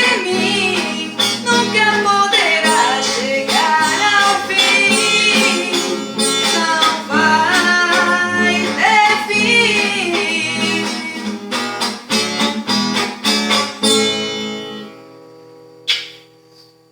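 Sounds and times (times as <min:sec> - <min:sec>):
woman singing: 0:00.0 - 0:11.5
guitar chords: 0:00.0 - 0:16.6.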